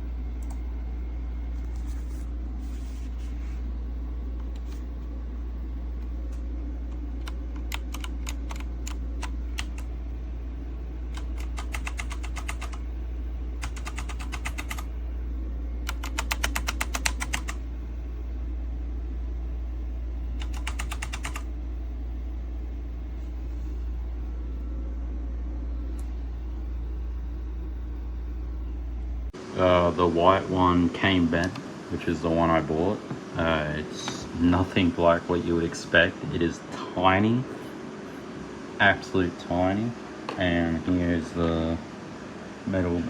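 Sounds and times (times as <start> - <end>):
low hum: 0.0 - 34.6
mechanical keyboard typing: 7.2 - 9.9, 11.1 - 12.8, 13.6 - 14.9, 15.8 - 17.6, 20.4 - 21.5.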